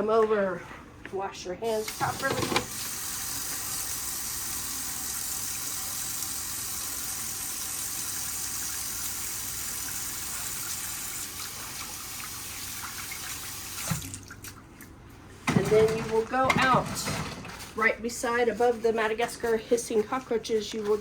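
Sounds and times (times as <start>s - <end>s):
tap water running into sink: 1.8s - 14.6s
hands being washed: 1.8s - 15.0s.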